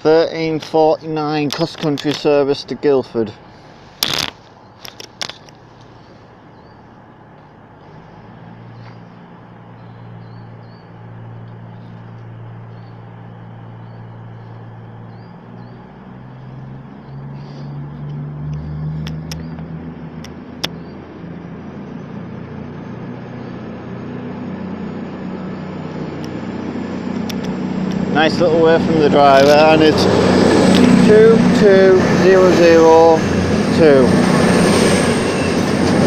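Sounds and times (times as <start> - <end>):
diesel train engines running up: 0.0 - 36.0
sharp clicks: 4.0 - 5.9, 18.0 - 20.8, 27.2 - 28.0.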